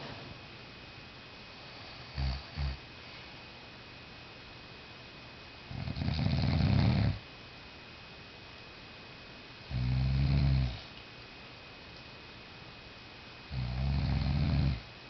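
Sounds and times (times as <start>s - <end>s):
person snoring: 5.7s - 7.2s, 9.7s - 10.8s, 13.5s - 14.8s.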